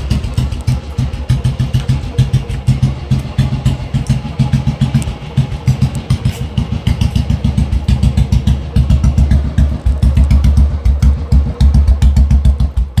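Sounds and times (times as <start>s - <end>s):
motorcycle engine exhaust thump: 0.0s - 13.0s.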